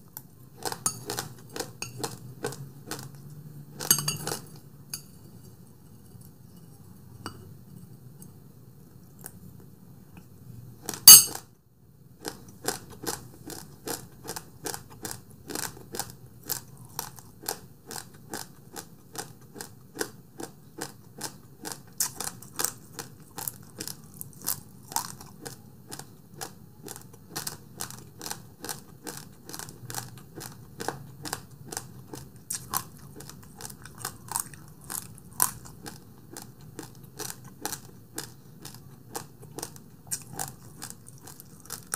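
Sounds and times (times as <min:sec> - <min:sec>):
person chewing rice: 0:00.0 - 0:03.3, 0:12.2 - 0:41.9
tableware clink: 0:03.9 - 0:04.4, 0:11.1 - 0:11.4.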